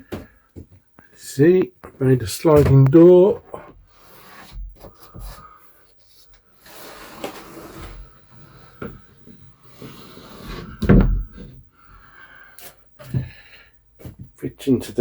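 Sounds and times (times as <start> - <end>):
sliding door scraping rumble: 9.7 - 11.4.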